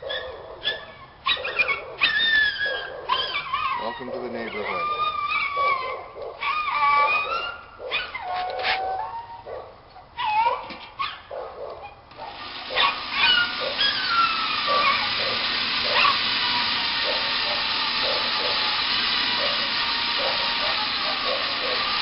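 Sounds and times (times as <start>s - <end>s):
dog whimpering and yipping: 0.0s - 16.2s
electric drill drilling: 2.1s - 5.8s, 12.1s - 22.0s.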